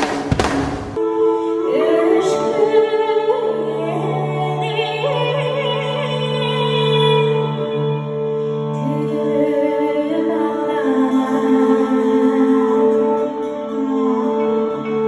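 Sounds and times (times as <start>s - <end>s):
loud burst of music: 0.0s - 1.1s.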